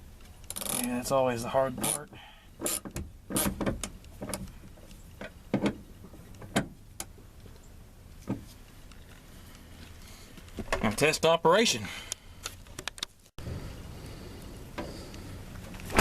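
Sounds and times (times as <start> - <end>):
hand tools and metal parts clicking: 0.2 - 1.1, 1.8 - 5.7.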